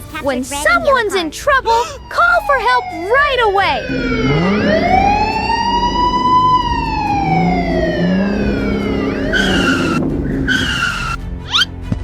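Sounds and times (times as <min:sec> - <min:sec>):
siren wailing: 0:01.7 - 0:11.2
short steady tones: 0:02.0 - 0:11.2.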